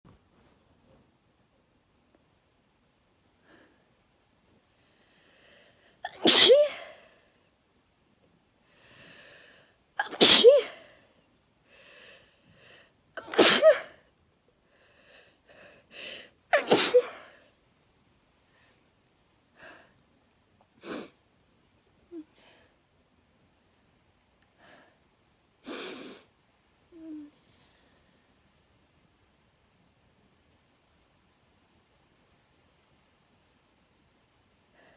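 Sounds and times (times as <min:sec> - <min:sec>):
quiet breaths: 0:03.1 - 0:06.0, 0:06.9 - 0:10.0, 0:10.8 - 0:13.2, 0:14.0 - 0:16.5, 0:17.2 - 0:31.0, 0:31.8 - 0:34.9
person sneezing loudly: 0:06.0 - 0:07.0, 0:10.0 - 0:10.9, 0:13.2 - 0:14.0, 0:16.5 - 0:17.4.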